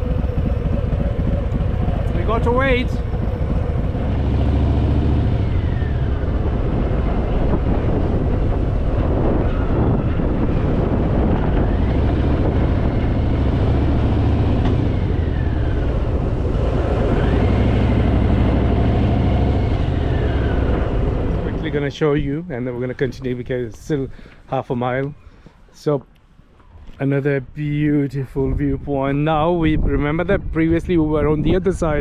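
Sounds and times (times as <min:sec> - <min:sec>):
motorcycle engine low drone: 0:00.0 - 0:23.7.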